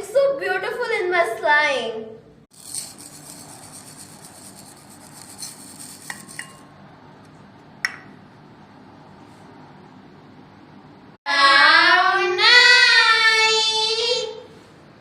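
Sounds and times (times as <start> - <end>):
stirring and scraping in bowl: 2.5 - 6.8.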